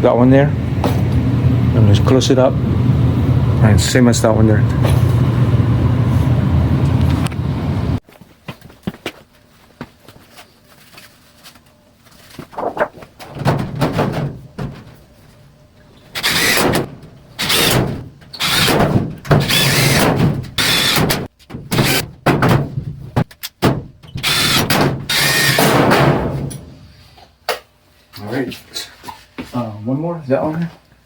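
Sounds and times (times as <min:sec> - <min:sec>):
power drill driving screws: 0:16.2 - 0:17.8, 0:18.4 - 0:21.2, 0:21.8 - 0:22.0, 0:24.2 - 0:25.7.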